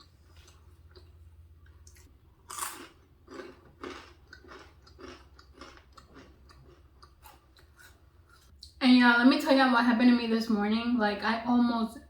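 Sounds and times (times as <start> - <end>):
chewing food: 0.0 - 8.8
faint low hum: 0.0 - 12.0
loud bite: 1.9 - 6.3.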